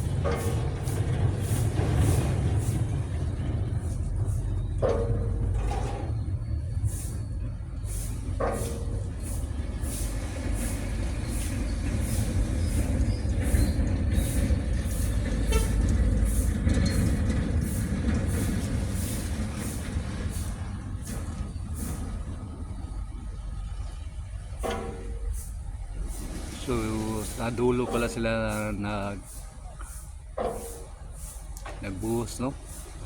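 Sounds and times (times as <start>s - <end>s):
heavy vehicle engine rumble: 0.0s - 33.0s.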